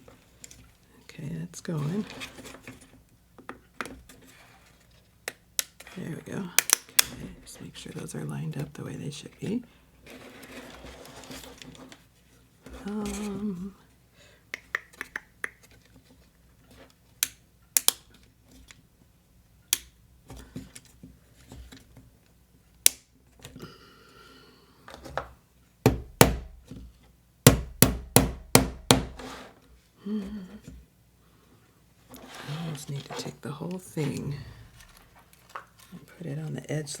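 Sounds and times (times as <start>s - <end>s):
wooden pieces clicking and knocking: 6.5s - 7.3s.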